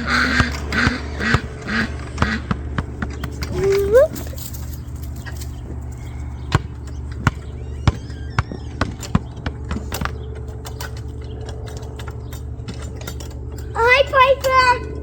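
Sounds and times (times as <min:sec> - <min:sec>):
steady low hum: 0:00.0 - 0:15.0
tools clicking and tapping: 0:09.8 - 0:14.8.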